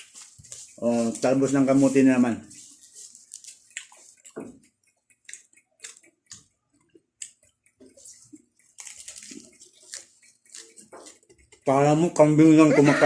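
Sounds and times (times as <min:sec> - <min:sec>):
chewing leaves: 0:00.0 - 0:12.3
wet mouth clicks: 0:03.5 - 0:10.9.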